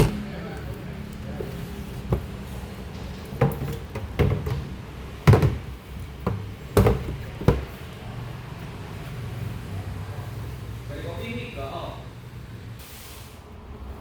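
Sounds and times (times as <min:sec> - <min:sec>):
hard knocks and thuds: 0:00.0 - 0:00.2.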